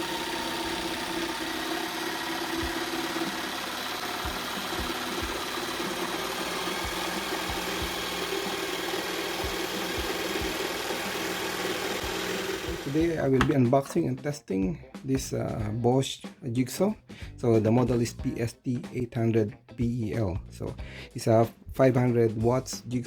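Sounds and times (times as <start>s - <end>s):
electric jigsaw running: 0.0s - 13.5s.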